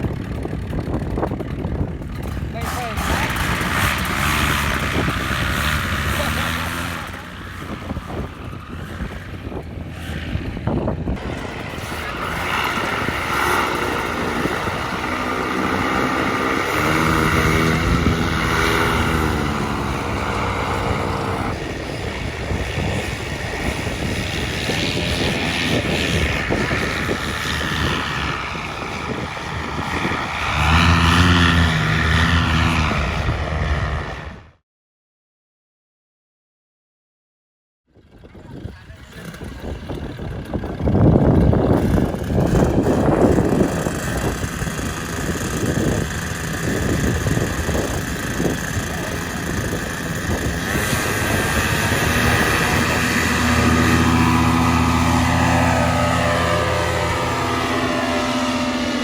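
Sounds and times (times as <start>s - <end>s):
paramotor engine revving: 0.0s - 34.5s, 39.2s - 59.0s.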